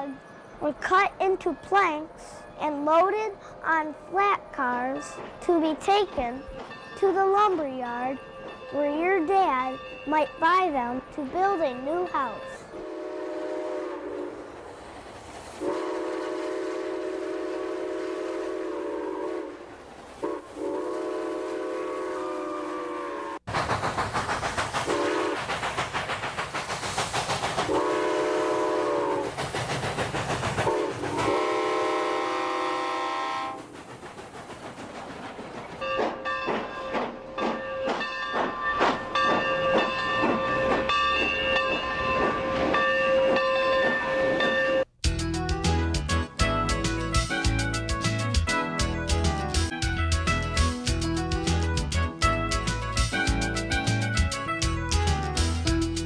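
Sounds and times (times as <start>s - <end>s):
steam whistle: 12.8s - 14.4s, 15.6s - 19.6s, 20.2s - 23.4s, 24.9s - 25.4s, 27.7s - 29.3s, 30.7s - 33.6s
loud steam hiss: 23.5s - 31.6s.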